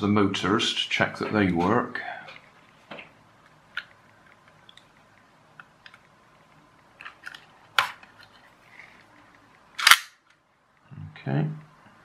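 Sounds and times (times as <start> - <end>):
sharp loud click: 9.8 - 10.2.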